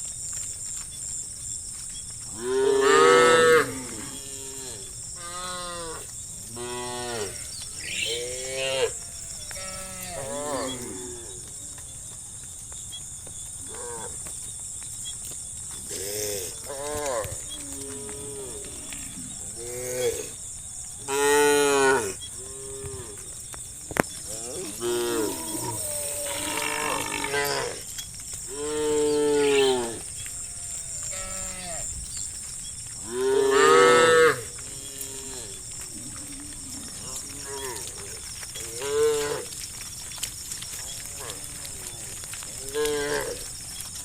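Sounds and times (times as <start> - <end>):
loud long cow moos: 2.4 - 11.4, 15.9 - 20.4, 24.2 - 27.8, 28.5 - 32.2, 33.0 - 38.0
cows mooing: 2.5 - 11.4, 24.3 - 27.8, 28.5 - 32.4, 33.0 - 38.0.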